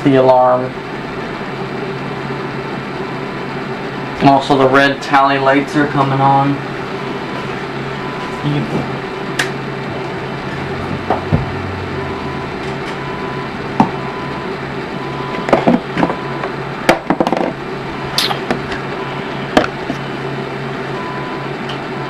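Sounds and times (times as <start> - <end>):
steady hum: 0.0 - 22.0.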